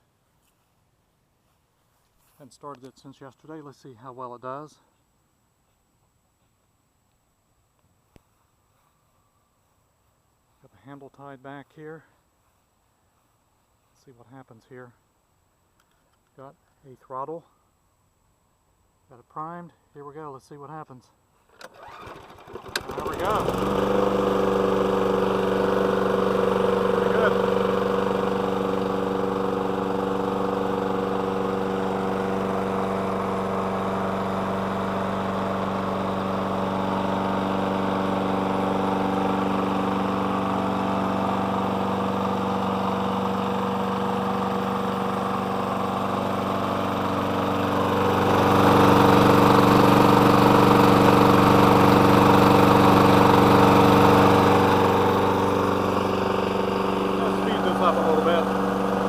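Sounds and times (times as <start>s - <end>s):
lawn mower engine running: 21.5s - 59.0s.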